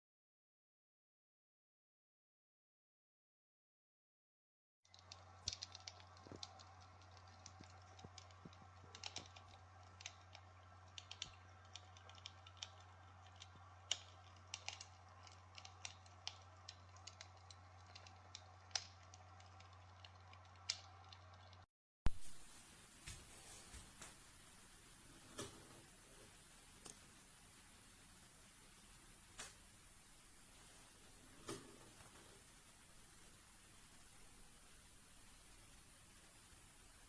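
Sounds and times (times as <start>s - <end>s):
crackling clicks: 4.9s - 21.7s, 26.7s - 27.2s, 28.7s - 32.6s.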